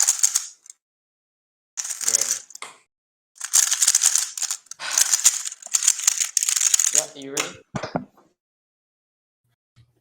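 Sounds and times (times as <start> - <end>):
puzzle cube clicking: 0.0 - 0.8, 1.8 - 2.6, 3.4 - 7.5.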